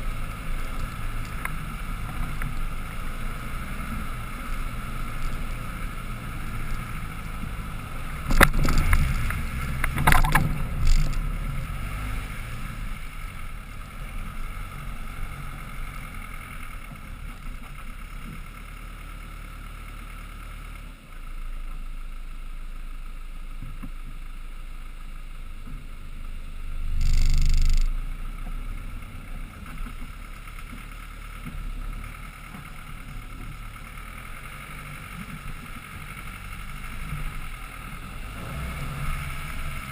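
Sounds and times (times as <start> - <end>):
engine low steady rumble: 0.0 - 39.9
vehicle knocking over rock: 8.3 - 11.2.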